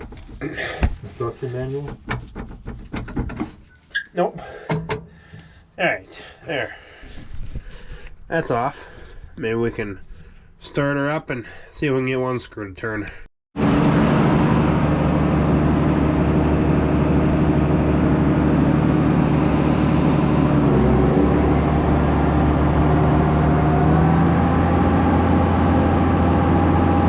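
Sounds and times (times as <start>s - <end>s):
feed mixer humming: 14.0s - 24.0s.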